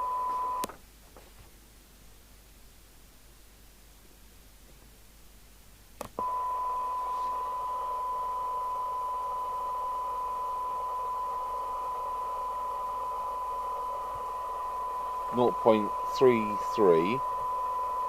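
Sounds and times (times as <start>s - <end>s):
steady test tone: 6.2s - 18.0s
radio hiss: 6.9s - 7.7s, 11.2s - 18.0s.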